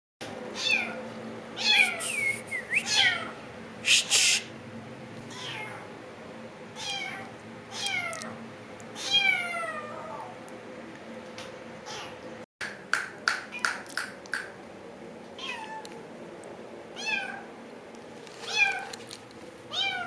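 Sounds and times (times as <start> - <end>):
short hissy noise bursts: 3.8 - 4.5.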